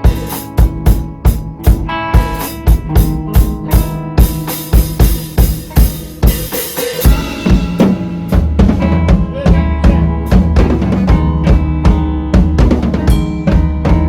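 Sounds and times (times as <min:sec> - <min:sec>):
drum kit beat: 0:00.0 - 0:14.0
sustained guitar notes: 0:00.0 - 0:14.0
deep bass notes: 0:07.1 - 0:14.0.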